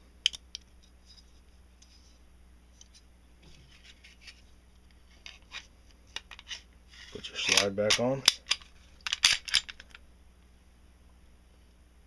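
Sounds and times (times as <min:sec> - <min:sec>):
pistol parts clicking and scraping: 0:00.3 - 0:00.7, 0:05.1 - 0:10.0.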